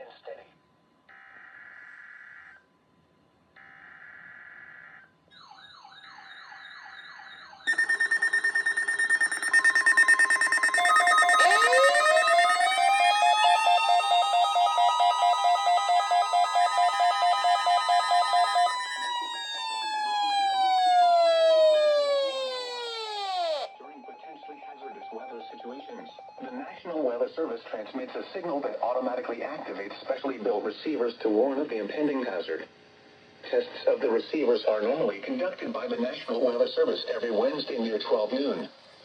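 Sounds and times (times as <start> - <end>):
siren winding up and down: 3.6 - 26.6
steady and pulsing beeps: 5.4 - 26.9
short bursts of electronic tones: 7.7 - 19.5
fast warbling tone: 7.7 - 26.5.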